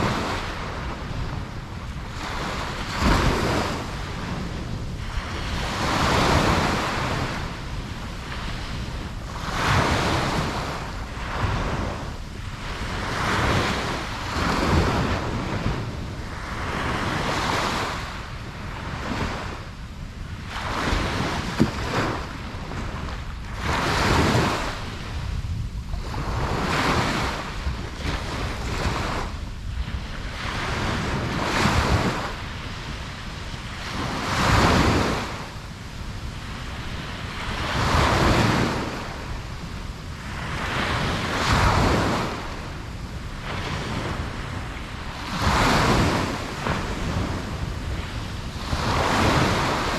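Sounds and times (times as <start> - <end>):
ocean waves breaking on beach: 0.0 - 49.9.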